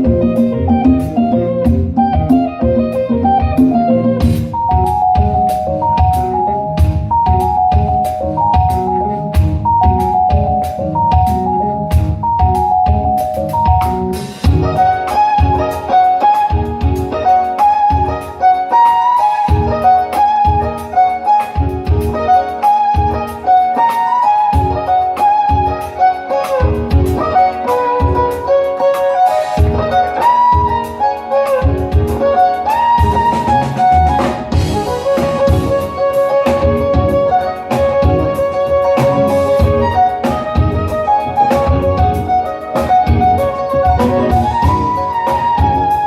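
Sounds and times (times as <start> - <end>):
bass: 0.0 - 15.7, 33.0 - 46.0
steady drum beat: 0.0 - 24.0, 24.6 - 46.0
keyboards: 0.0 - 46.0
violin melody with sliding notes: 0.0 - 46.0.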